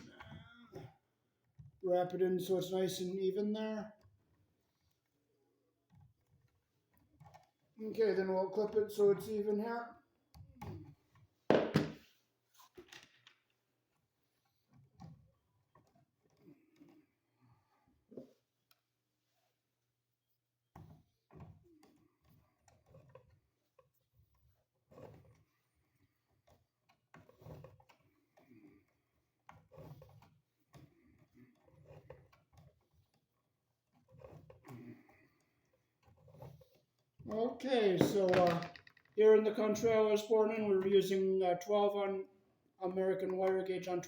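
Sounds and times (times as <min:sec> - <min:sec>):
wires rustling and clicking: 0:20.3 - 0:41.2.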